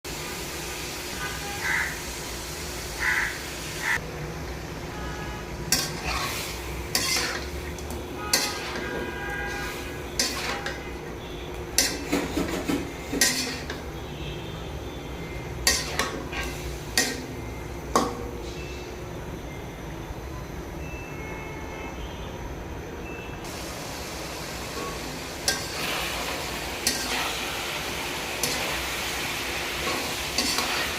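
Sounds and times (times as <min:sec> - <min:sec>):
metal utensil scraping a pan: 0:05.7 - 0:07.5, 0:08.2 - 0:10.9, 0:11.8 - 0:13.8, 0:15.6 - 0:17.3, 0:26.8 - 0:27.6, 0:28.4 - 0:28.9, 0:29.8 - 0:30.9.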